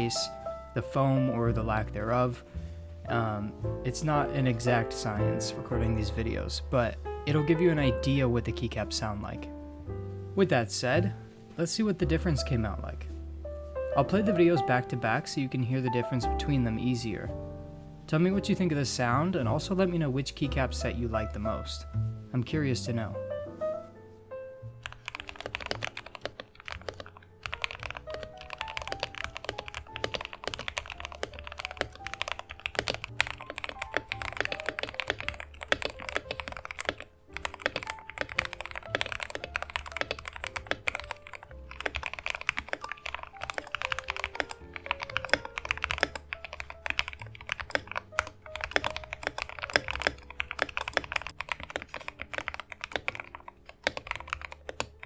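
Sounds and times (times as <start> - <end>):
background music: 0.0 - 55.0
mechanical keyboard typing: 24.8 - 55.0.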